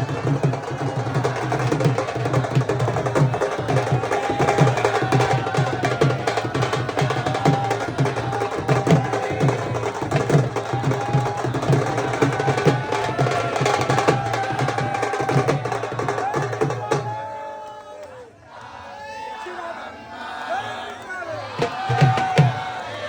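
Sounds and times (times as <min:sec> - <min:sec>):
hand drum beat: 0:00.0 - 0:17.2, 0:21.6 - 0:22.8.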